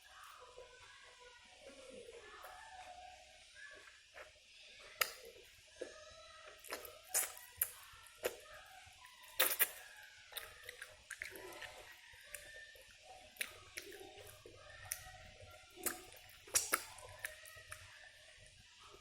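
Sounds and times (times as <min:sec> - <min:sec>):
wet chewing with smacks: 0:03.7 - 0:08.5, 0:09.1 - 0:17.9.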